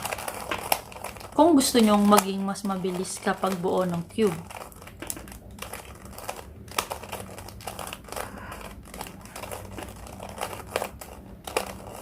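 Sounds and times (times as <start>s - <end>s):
puzzle cube twisting clicks: 4.4s - 12.0s.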